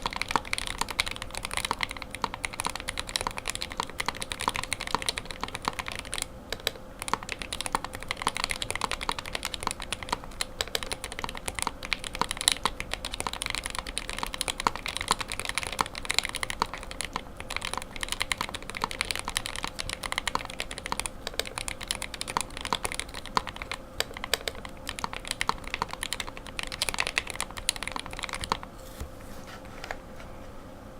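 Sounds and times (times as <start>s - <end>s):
keyboard typing clicks: 0.0s - 28.7s.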